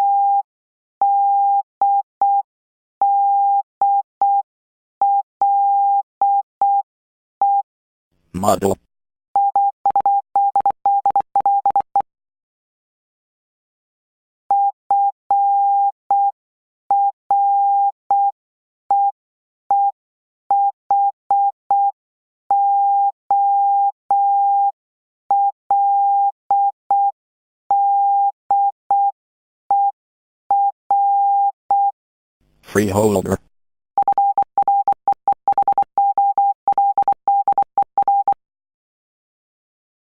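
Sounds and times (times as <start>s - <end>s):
morse code beeps: 9.4s - 12.0s, 34.0s - 38.4s.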